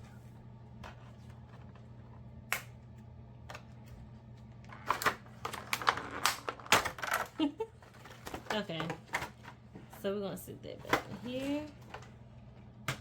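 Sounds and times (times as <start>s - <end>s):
plastic packaging crackling: 4.9s - 9.4s.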